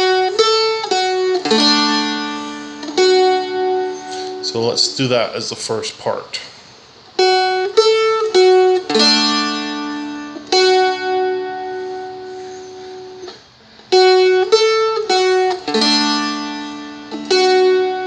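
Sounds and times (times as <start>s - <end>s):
plucked dulcimer melody: 0.0s - 4.4s, 7.2s - 12.8s.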